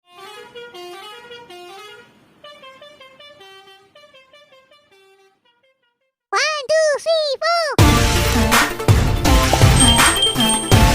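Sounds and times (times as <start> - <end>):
multi-tone bus horn tune: 0.0 - 6.2, 9.6 - 10.9.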